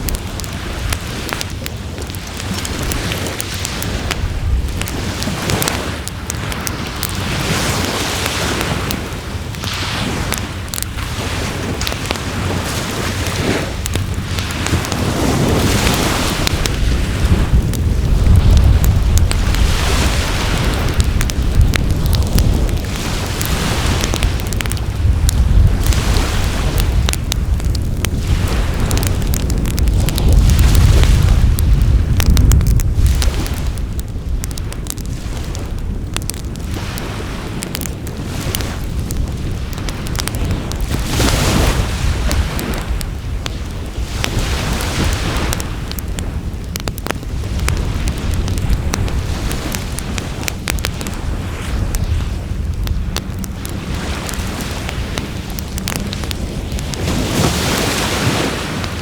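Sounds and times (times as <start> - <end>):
wind buffeting microphone: 0.0 - 59.0
wood fire crackling: 0.0 - 59.0
heavy low rumble: 13.8 - 36.7, 46.7 - 57.7.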